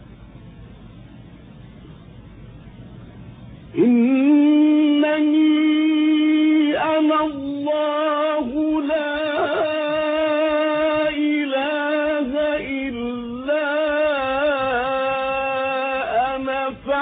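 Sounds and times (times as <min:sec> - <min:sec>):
low recording hiss: 0:00.0 - 0:17.0
man reciting melodically: 0:03.8 - 0:17.0.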